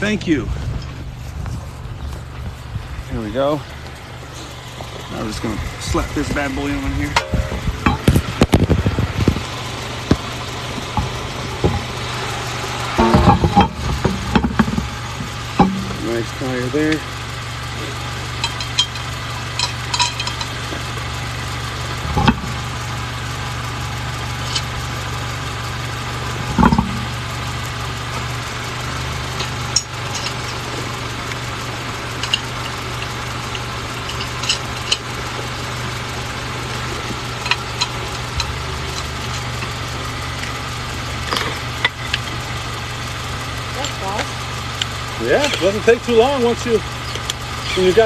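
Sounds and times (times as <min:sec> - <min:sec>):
vehicle engine idling: 0:00.0 - 0:48.0
heavy thumps of tire: 0:05.8 - 0:17.1, 0:18.4 - 0:24.8, 0:26.2 - 0:40.6
light metallic clinks: 0:18.3 - 0:20.6.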